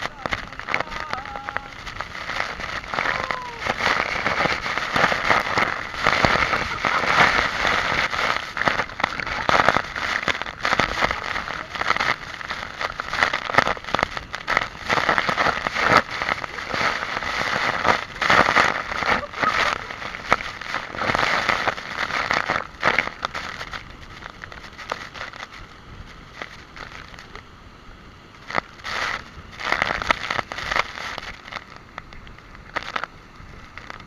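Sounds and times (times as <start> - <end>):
waterfall pouring: 0.0 - 23.4
sharp water splashes: 0.0 - 25.4.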